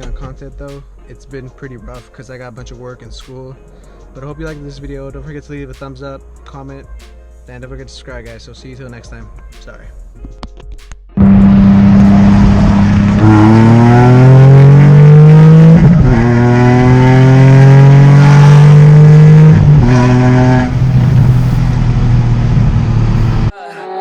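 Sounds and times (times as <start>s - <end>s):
car engine accelerating: 11.2s - 23.5s.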